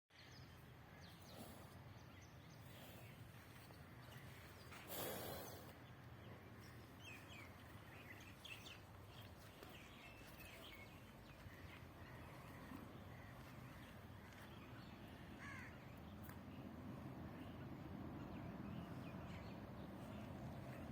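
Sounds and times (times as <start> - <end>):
faint bird calls: 9.4 - 16.4.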